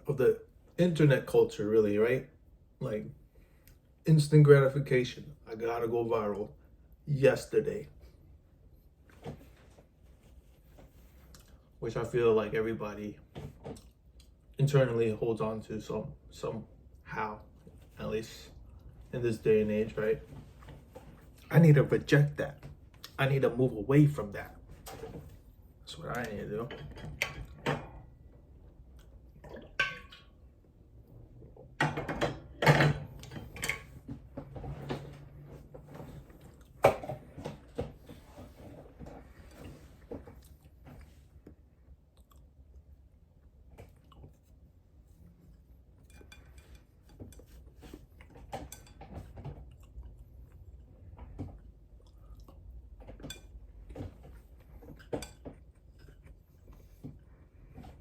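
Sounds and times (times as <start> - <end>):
person chewing: 41.4 - 42.9, 43.7 - 44.6, 51.6 - 52.8
utensils clinking on a dish: 46.0 - 49.6.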